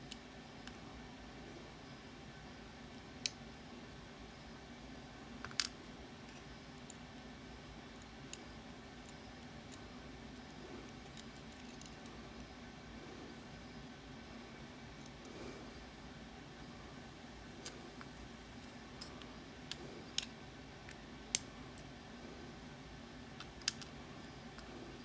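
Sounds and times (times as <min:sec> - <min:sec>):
steady low hum: 0:00.0 - 0:25.0
small metal lock parts clicking: 0:05.4 - 0:07.2, 0:07.9 - 0:12.2, 0:23.4 - 0:24.7.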